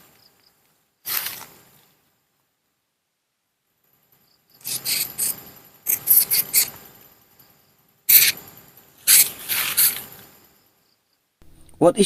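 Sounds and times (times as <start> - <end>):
insect buzzing rasp: 4.2 - 7.1, 8.0 - 11.1.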